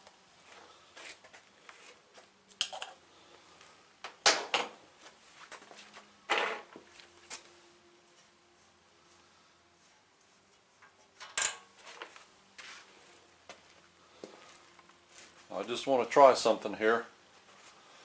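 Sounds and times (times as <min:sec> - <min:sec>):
metal tools clinking: 0:11.2 - 0:11.7.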